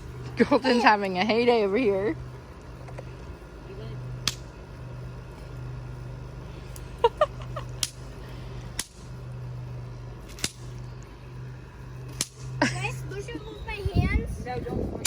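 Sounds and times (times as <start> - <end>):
low hum: 0.0 - 15.0
bang snaps cracking: 4.2 - 4.5, 7.8 - 8.0, 8.8 - 9.1, 10.3 - 10.8, 12.1 - 12.5.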